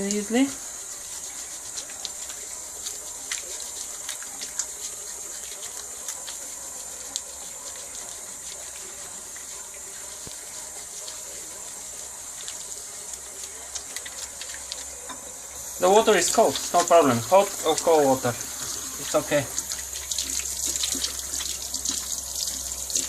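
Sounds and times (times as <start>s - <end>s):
tap water running into sink: 0.0s - 23.0s.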